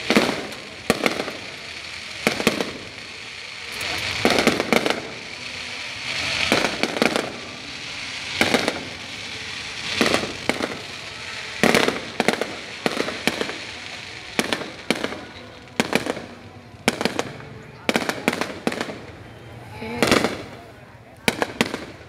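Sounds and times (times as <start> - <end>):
fireworks banging: 0.0 - 22.0
fireworks hissing and crackling: 0.0 - 22.0.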